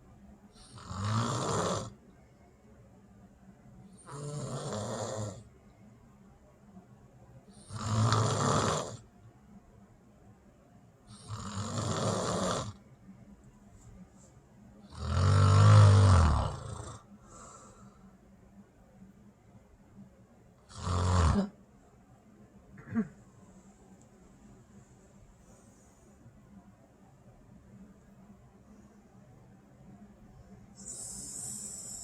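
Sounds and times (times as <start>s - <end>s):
person snoring: 0.6s - 2.0s, 4.0s - 5.4s, 7.6s - 9.0s, 11.1s - 12.8s, 14.9s - 17.8s, 20.7s - 21.5s.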